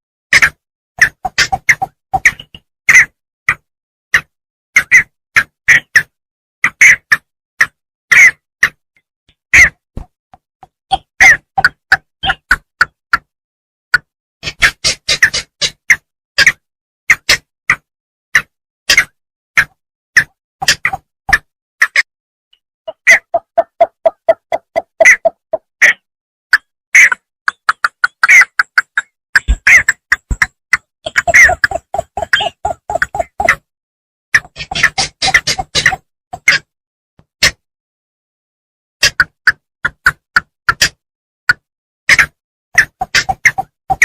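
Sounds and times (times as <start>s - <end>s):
bittern calling: 31.0s - 33.6s.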